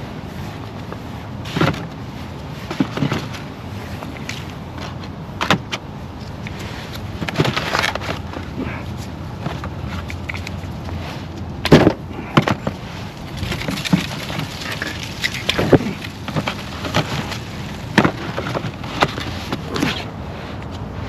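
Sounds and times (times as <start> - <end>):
packaging knocks and crackles: 11.7 - 20.0.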